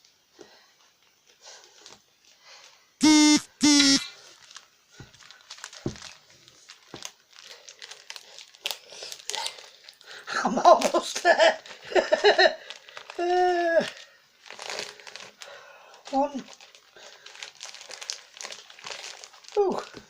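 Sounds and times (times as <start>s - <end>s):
loud steady tones: 3.0s - 4.1s
packaging crinkling and rustling: 4.3s - 10.0s, 12.5s - 13.2s, 13.8s - 20.0s.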